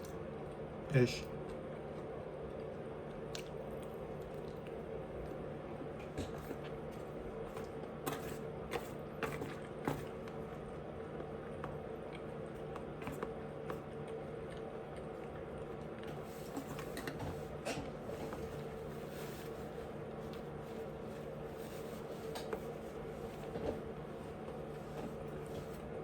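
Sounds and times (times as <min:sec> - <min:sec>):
person chewing: 0:01.4 - 0:05.4, 0:11.1 - 0:16.2.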